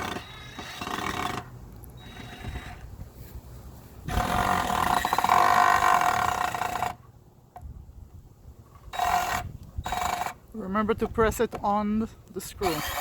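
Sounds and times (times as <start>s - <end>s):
power drill running: 0.0s - 2.8s, 8.9s - 10.3s, 12.6s - 13.0s.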